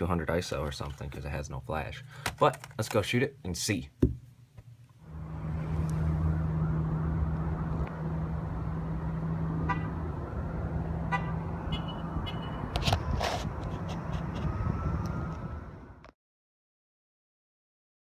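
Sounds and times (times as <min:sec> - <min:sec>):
motor vehicle humming: 0:05.0 - 0:16.1.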